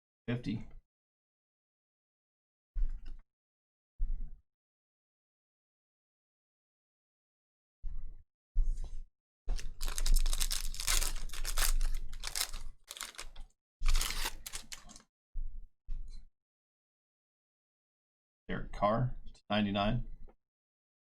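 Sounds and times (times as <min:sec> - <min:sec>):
wrappers tearing and crinkling: 0:09.5 - 0:15.0.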